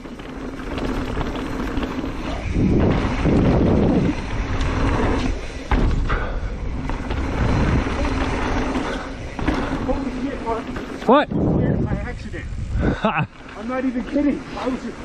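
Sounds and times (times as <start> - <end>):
bike tyres rumbling on dirt: 0.0 - 15.0
wind on microphone: 2.0 - 10.1, 11.2 - 13.3.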